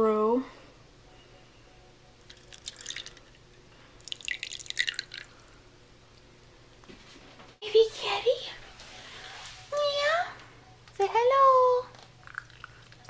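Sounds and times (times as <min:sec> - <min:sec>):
water trickling and splashing: 0:04.0 - 0:05.4.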